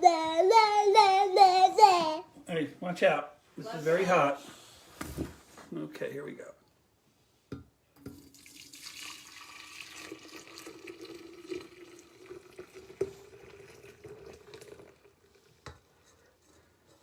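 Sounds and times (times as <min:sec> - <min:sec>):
liquid pouring into pitcher: 0:08.0 - 0:16.0.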